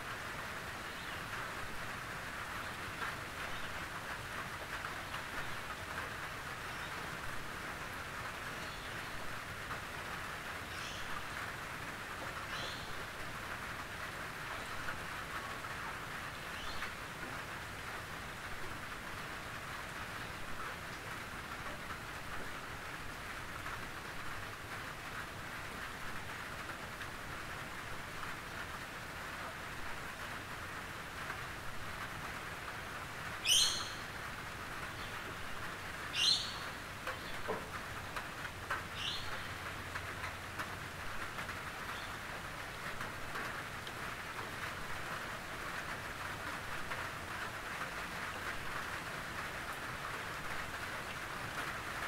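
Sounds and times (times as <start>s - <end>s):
rain on a tin roof: 0.0s - 52.0s
bird calls: 12.5s - 13.0s, 33.4s - 34.2s, 36.1s - 37.6s, 39.0s - 39.6s.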